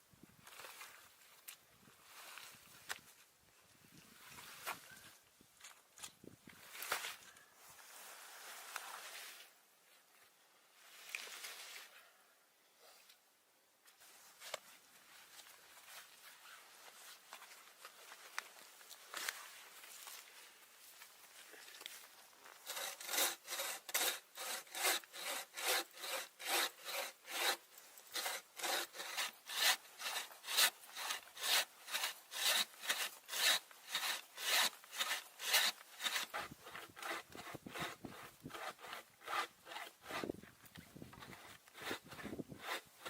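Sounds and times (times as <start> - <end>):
hand saw cutting wood: 22.6 - 40.4, 41.2 - 43.0.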